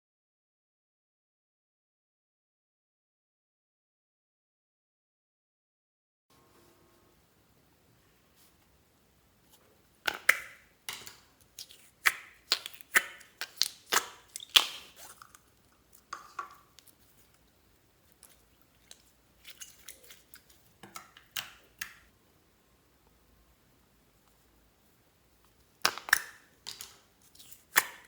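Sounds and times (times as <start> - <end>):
slime popping and crackling: 10.2 - 16.1.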